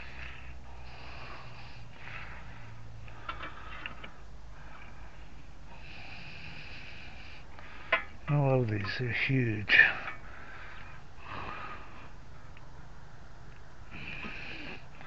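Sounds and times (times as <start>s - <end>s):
person breathing hard through nose: 0.0s - 8.2s, 9.9s - 12.6s
low steady hum: 0.0s - 15.0s.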